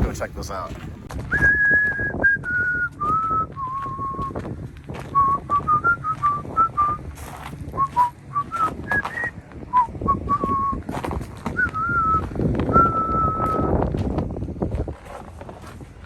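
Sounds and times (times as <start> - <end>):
person whistling a tune: 1.3 - 4.4, 5.1 - 7.0, 7.8 - 10.8, 11.6 - 13.8
footsteps crunching in snow: 3.6 - 9.3, 13.5 - 16.0.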